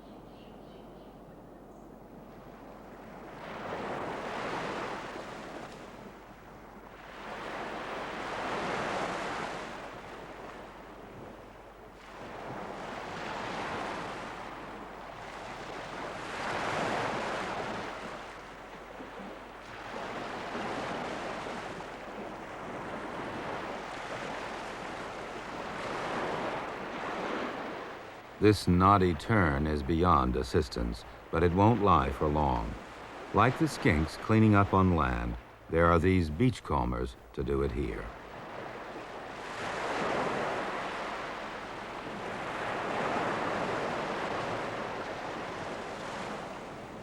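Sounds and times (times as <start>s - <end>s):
surf washing onto beach: 12.0s - 47.0s.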